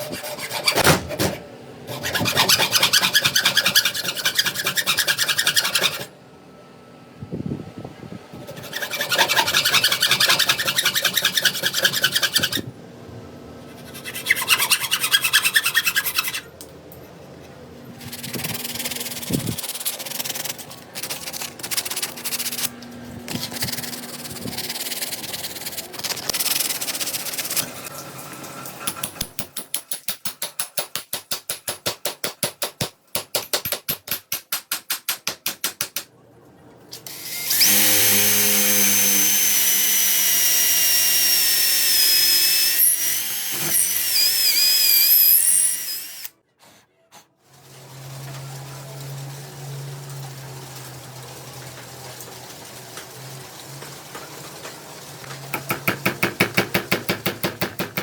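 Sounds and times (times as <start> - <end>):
rasping strokes on wood: 1.9 - 6.1, 8.5 - 12.6
power tool whine: 37.1 - 46.3.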